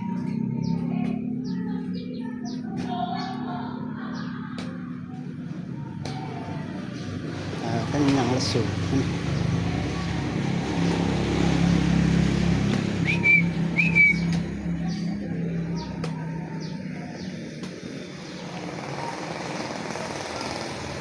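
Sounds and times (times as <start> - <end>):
high bird chirps: 10.8 - 15.2.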